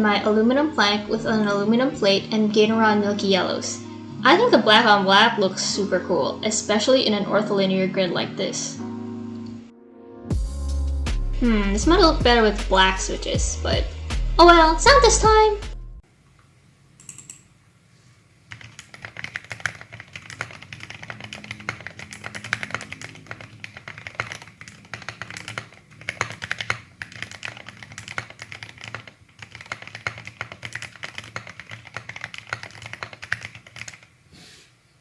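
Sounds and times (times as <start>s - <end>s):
mechanical keyboard typing: 17.0s - 17.4s, 18.5s - 34.1s.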